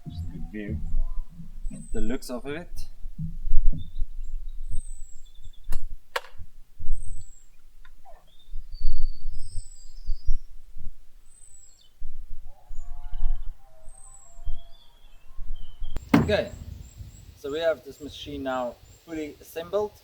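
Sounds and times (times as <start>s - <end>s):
low thumps and rumble: 0.0s - 4.8s, 16.0s - 17.4s
birds chirping: 0.0s - 5.7s, 16.0s - 19.6s.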